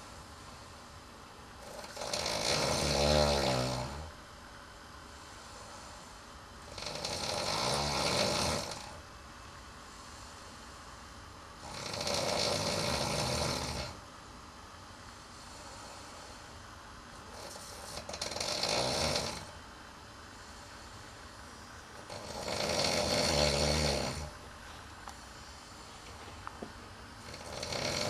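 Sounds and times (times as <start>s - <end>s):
person snoring loudly: 1.6s - 4.2s, 6.7s - 9.0s, 11.6s - 14.0s, 17.2s - 19.5s, 22.0s - 24.4s, 27.2s - 28.0s.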